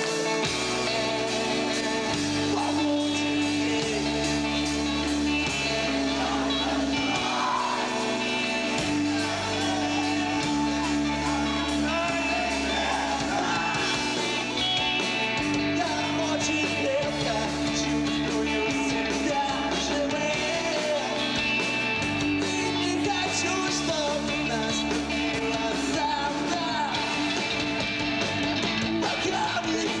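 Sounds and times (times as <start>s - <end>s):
person singing: 0.0s - 21.4s
rock band playing: 0.0s - 30.0s.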